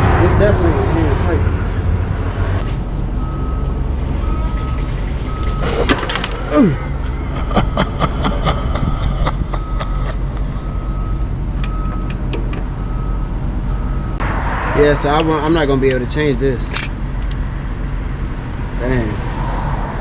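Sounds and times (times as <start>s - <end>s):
steady low hum: 0.0s - 14.2s
short beeps: 3.2s - 12.1s.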